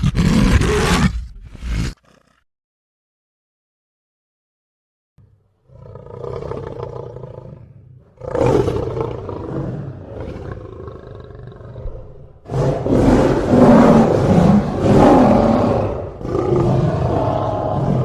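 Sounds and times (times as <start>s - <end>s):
lion roaring: 5.6s - 18.0s.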